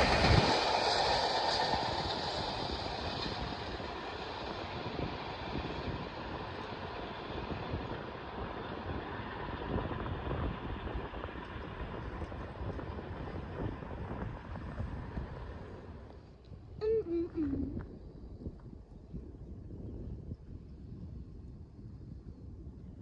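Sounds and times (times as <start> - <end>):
freight train wheels rumbling on rails: 0.0 - 16.2.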